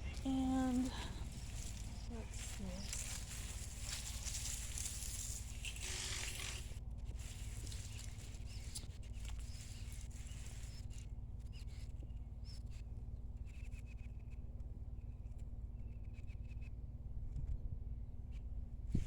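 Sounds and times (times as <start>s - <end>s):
faint bird chirps: 0.0s - 6.6s, 7.2s - 14.4s
hands digging through soil: 0.0s - 11.0s
light scrapes and clicks: 0.0s - 11.8s.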